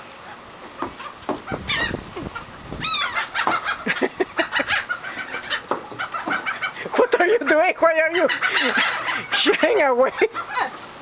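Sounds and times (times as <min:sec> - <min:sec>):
seagulls calling: 0:00.2 - 0:10.9.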